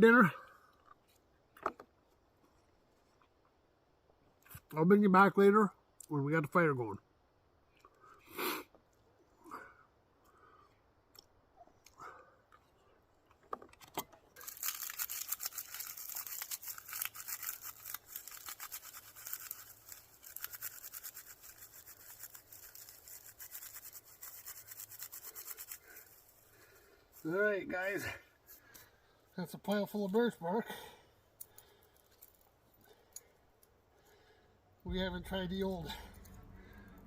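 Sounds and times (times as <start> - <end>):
bark being scraped: 14.4 - 27.3.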